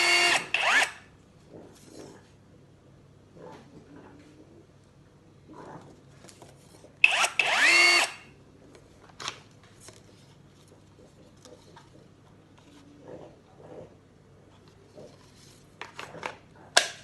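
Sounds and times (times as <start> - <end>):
impact driver whining: 0.0 - 1.0, 7.0 - 8.3.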